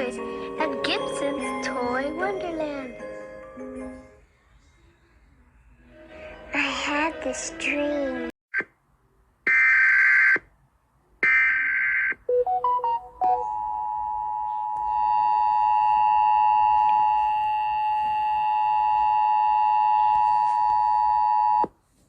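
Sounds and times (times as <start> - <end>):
two-tone attention signal: 12.3 - 18.1
rising beeps: 12.3 - 18.9.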